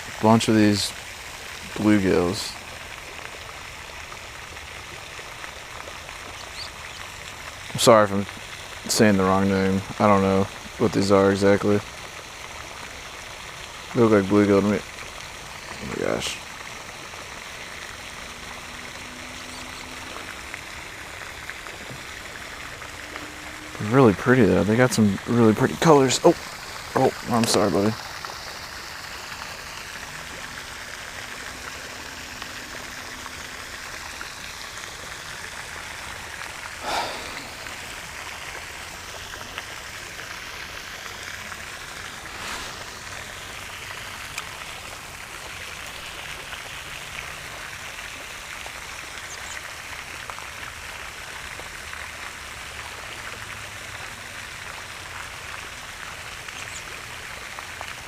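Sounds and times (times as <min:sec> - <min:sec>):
running water hiss: 0:00.0 - 0:58.0
water splash: 0:00.0 - 0:58.0.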